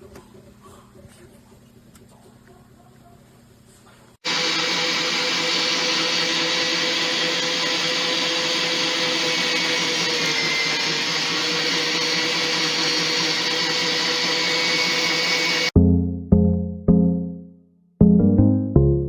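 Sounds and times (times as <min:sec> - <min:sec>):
meat grinder motor whirring: 0:04.2 - 0:15.8.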